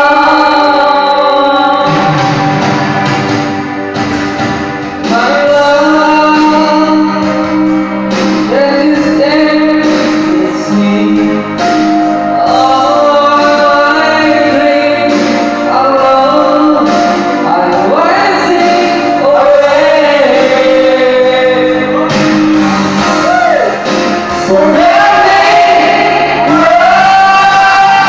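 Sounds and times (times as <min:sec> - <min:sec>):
music with singing voices: 0:00.0 - 0:28.0.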